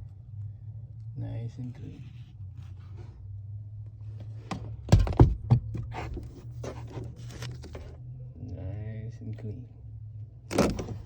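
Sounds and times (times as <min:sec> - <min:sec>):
steady low hum: 0:00.0 - 0:11.0
heavier thumps: 0:04.8 - 0:06.0.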